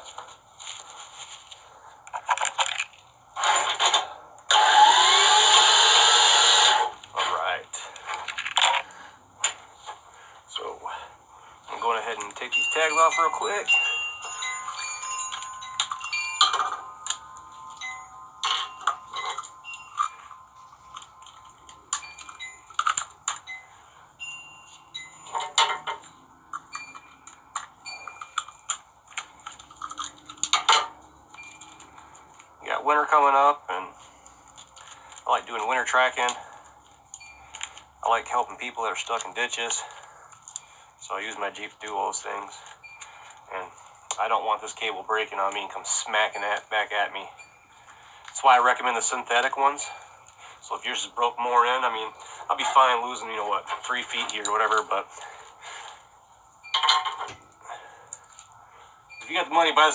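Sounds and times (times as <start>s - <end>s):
loud steady mechanical noise: 4.5s - 7.1s
light metallic clinks: 11.6s - 32.5s.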